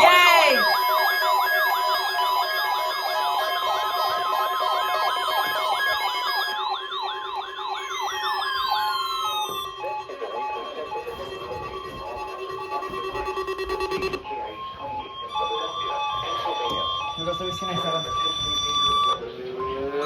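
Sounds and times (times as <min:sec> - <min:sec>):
steady alarm tones: 0:00.0 - 0:20.0
yelping electronic siren sweep: 0:00.0 - 0:20.0.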